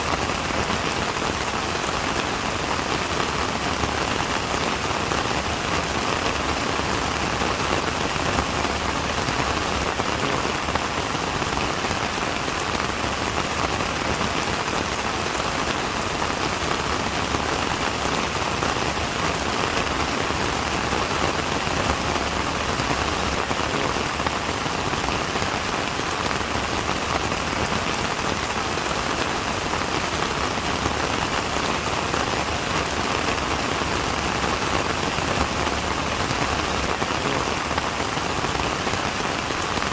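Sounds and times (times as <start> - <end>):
steady rain pattering: 0.0 - 39.9.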